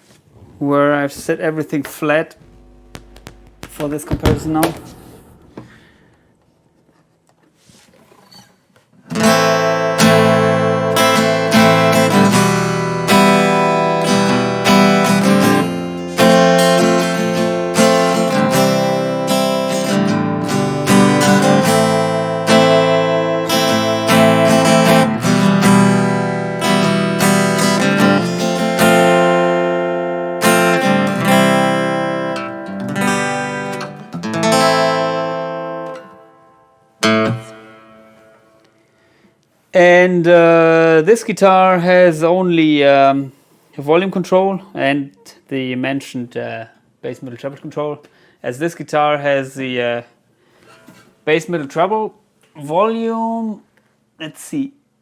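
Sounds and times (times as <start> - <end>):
acoustic-electric guitar strumming chords: 2.4 - 6.6, 9.1 - 38.7.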